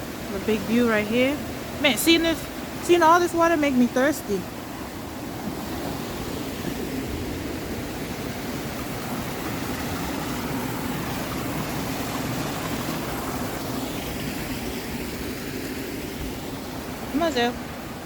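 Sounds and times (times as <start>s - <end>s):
creek water rushing over rocks: 0.0s - 18.0s.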